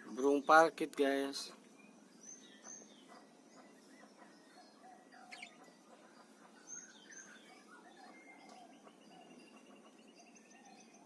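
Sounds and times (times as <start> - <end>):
parakeet chirps: 5.2 - 5.9.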